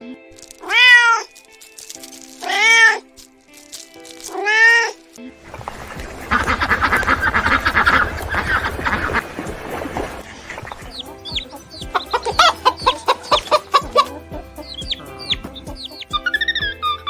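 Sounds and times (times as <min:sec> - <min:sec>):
cat meowing: 0:00.6 - 0:01.4, 0:02.4 - 0:03.1, 0:04.3 - 0:05.0
chickens clucking: 0:05.5 - 0:17.0.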